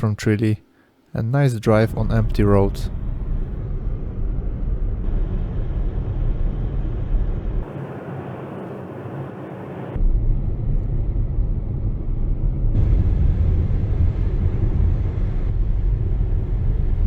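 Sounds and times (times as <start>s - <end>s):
car engine and road noise: 1.9s - 17.0s.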